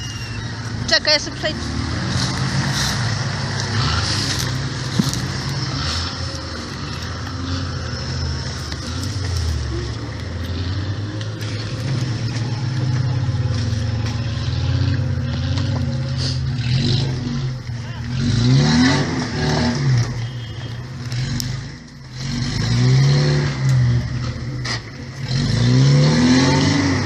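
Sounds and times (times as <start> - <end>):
off-road vehicle engine running: 0.0 - 27.0.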